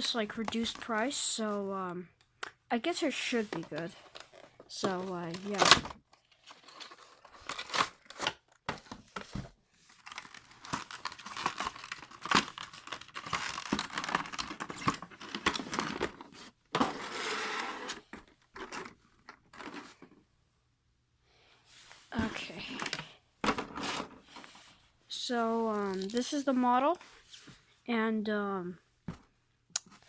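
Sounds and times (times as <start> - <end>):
plastic wrapping crinkling and tearing: 5.2 - 8.6, 9.9 - 16.1.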